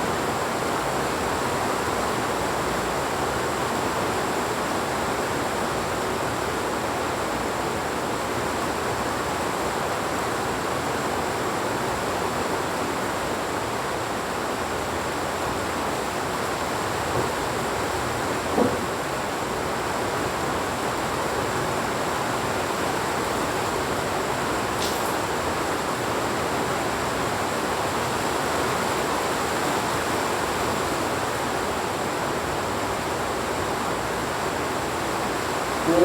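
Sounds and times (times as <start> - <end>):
heavy rain: 20.4 - 36.0.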